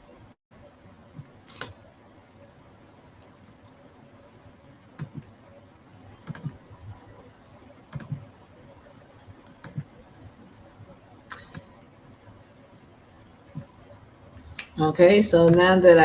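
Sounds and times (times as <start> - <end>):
faint steady hum: 0.0 - 16.0
keyboard and mouse clicking: 5.0 - 5.3, 6.2 - 6.6, 7.9 - 8.3, 9.4 - 9.9, 11.3 - 11.7.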